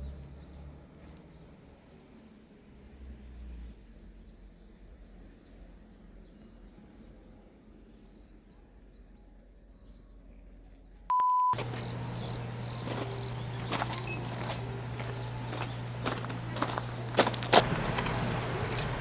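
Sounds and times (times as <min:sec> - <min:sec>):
short steady beep: 0:11.1 - 0:11.8
clicks: 0:11.1 - 0:19.0
crickets chirping: 0:11.1 - 0:19.0
low hum: 0:11.5 - 0:19.0.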